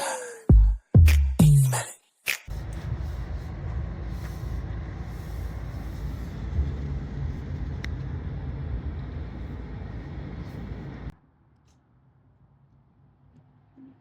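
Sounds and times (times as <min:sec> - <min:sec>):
vehicle engine and road noise: 0:02.5 - 0:13.8.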